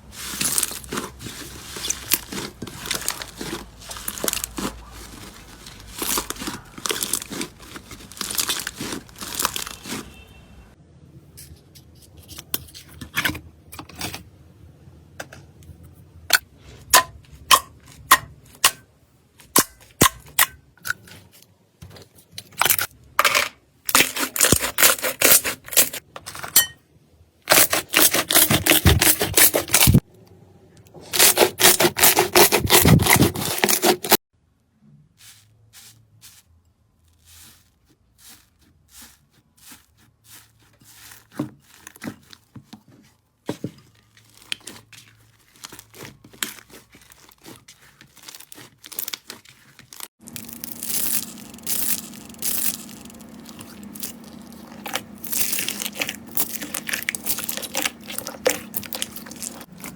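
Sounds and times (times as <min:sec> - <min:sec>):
slime crackling and popping: 0:00.2 - 0:10.2, 0:44.2 - 0:59.9.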